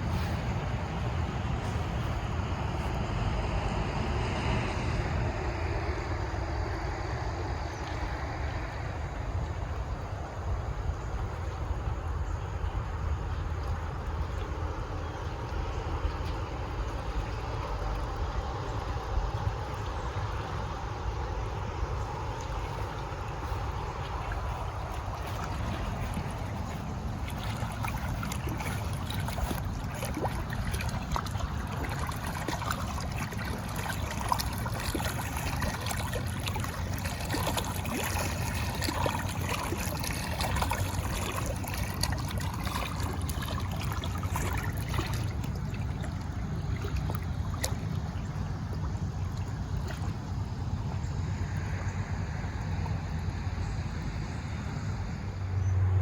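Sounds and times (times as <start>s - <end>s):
steady low rumble: 0.0s - 56.0s
water trickling and splashing: 0.0s - 56.0s.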